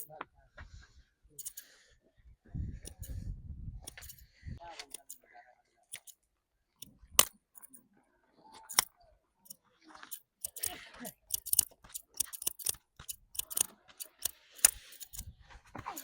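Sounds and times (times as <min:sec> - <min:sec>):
scissors snipping hair: 0:01.4 - 0:01.7, 0:02.9 - 0:03.1, 0:04.9 - 0:05.2, 0:06.0 - 0:06.2, 0:10.0 - 0:15.3.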